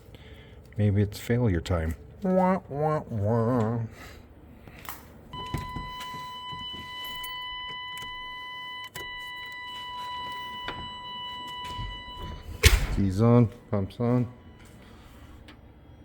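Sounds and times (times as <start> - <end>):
ignition key click: 7.0 - 11.0.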